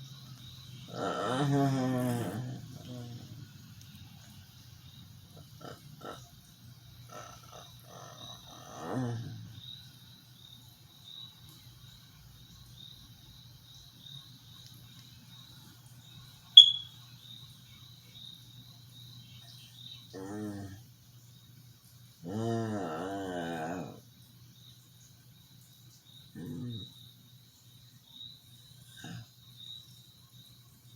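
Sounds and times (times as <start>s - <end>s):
person groaning in sleep: 0.9s - 3.4s, 7.1s - 9.6s, 22.2s - 24.0s
faint high chirp: 16.6s - 17.0s.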